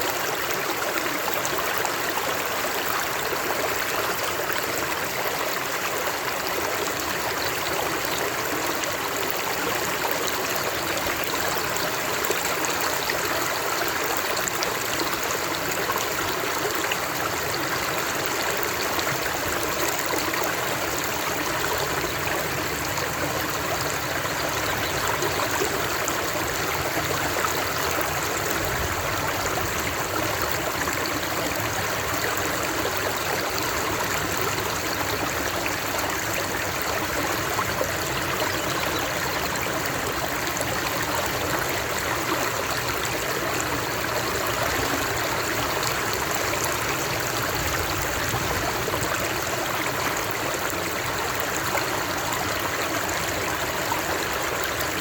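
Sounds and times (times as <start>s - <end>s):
flowing water: 0.0s - 55.0s.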